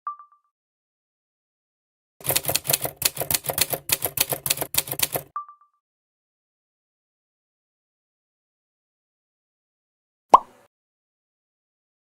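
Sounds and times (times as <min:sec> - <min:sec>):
typewriter bell ding: 0:02.2 - 0:05.3
typewriter keys clacking: 0:02.2 - 0:05.3.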